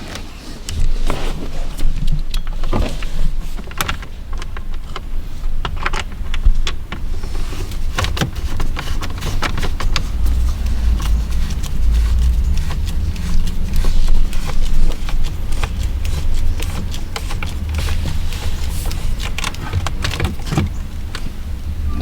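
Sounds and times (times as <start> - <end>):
low rumble: 9.7 - 14.9, 21.3 - 22.0.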